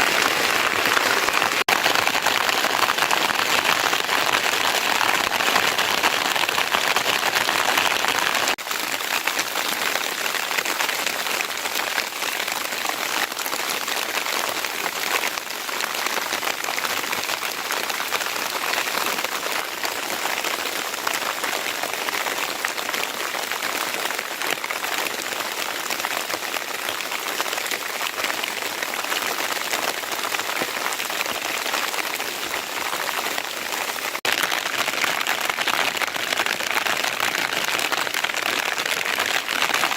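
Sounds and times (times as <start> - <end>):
steady rain patter: 0.0 - 39.9.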